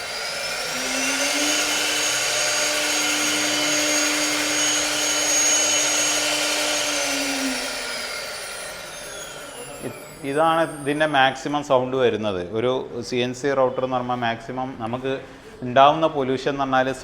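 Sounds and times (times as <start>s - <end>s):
router spindle whine: 0.0s - 11.5s.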